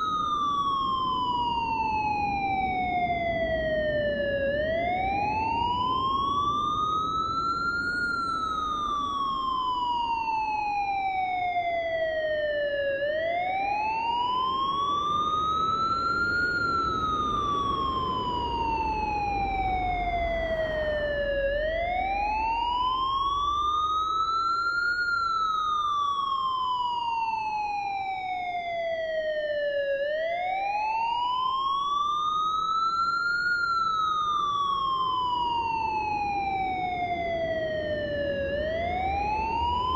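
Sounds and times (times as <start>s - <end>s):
siren wailing: 0.0s - 39.9s
low steady rumble: 14.4s - 25.6s.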